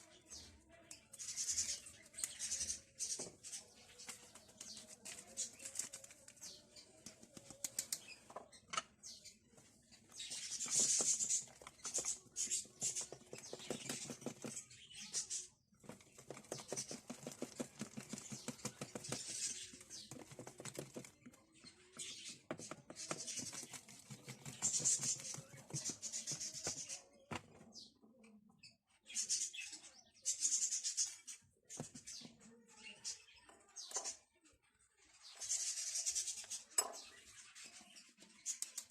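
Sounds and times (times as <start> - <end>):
utensil scraping and tapping bowl: 10.2 - 14.6, 15.9 - 21.3.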